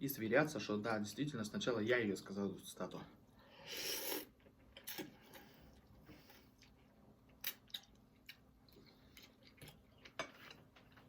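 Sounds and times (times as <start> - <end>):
person chewing food: 4.0 - 11.0.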